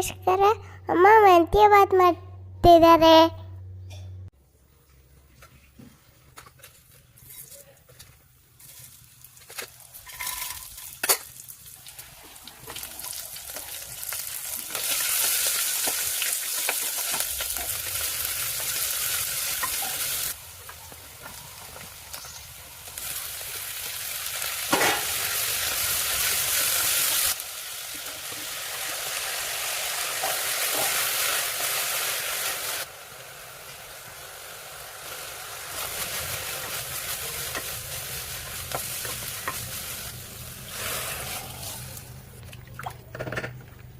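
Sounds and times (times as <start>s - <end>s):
food sizzling in oil: 8.6s - 42.0s.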